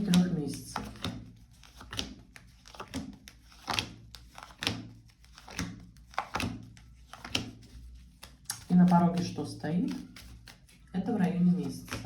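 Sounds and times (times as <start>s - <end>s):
cards knocking and slapping on table: 0.8s - 7.6s.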